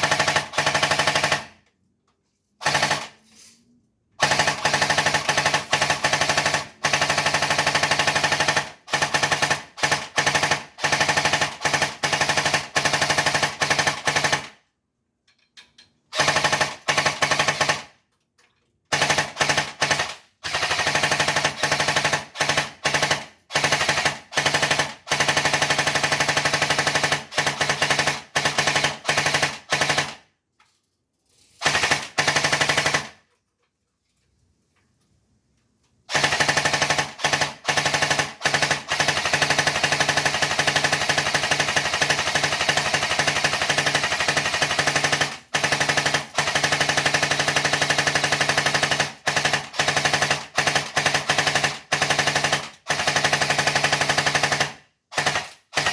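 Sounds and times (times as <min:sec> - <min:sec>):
machine gun full-auto bursts: 0:00.0 - 0:01.6, 0:02.6 - 0:03.2, 0:04.2 - 0:14.6, 0:16.1 - 0:18.0, 0:18.9 - 0:30.3, 0:31.6 - 0:33.3, 0:36.1 - 0:55.9.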